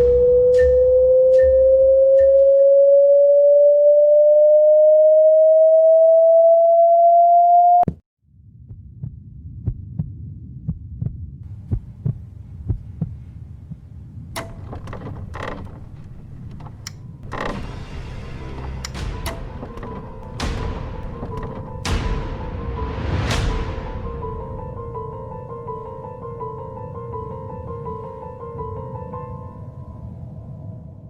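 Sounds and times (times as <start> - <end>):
pure tone rising in pitch: 0.0 - 7.9
low heartbeat-like throbbing: 8.5 - 13.2
sharp clicks and knocks: 14.4 - 22.5.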